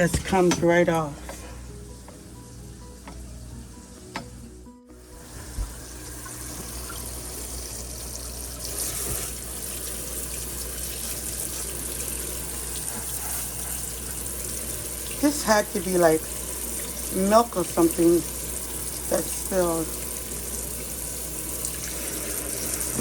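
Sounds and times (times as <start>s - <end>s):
water running from tap: 0.0s - 23.0s.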